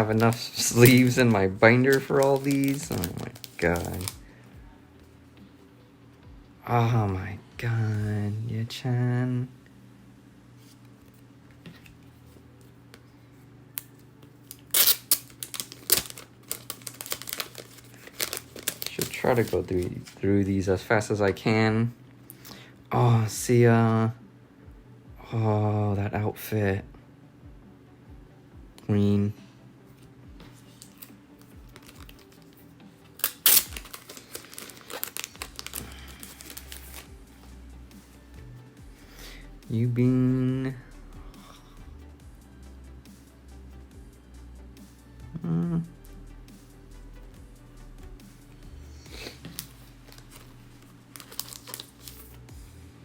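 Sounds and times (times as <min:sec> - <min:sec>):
packaging crinkling and rustling: 0:00.0 - 0:04.2, 0:14.4 - 0:20.2, 0:30.7 - 0:37.1, 0:49.3 - 0:52.4.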